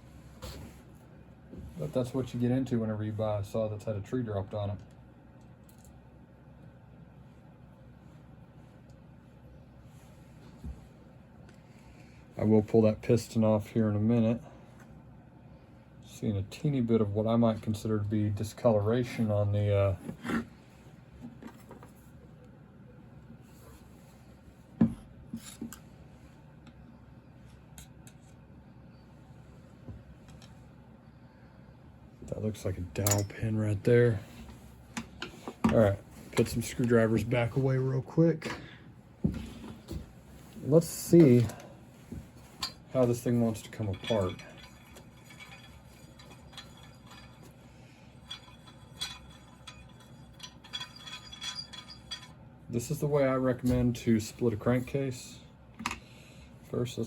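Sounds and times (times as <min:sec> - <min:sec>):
metal tools clinking: 0:33.0 - 0:33.5, 0:42.6 - 0:47.6, 0:48.2 - 0:53.0.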